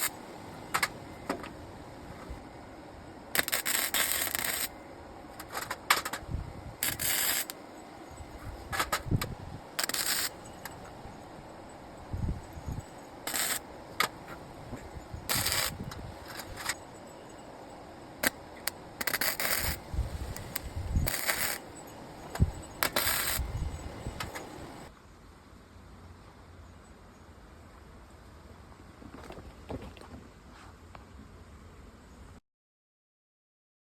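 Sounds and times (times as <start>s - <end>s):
small metal pieces clinking: 9.8s - 10.9s, 12.6s - 14.3s, 18.2s - 24.7s.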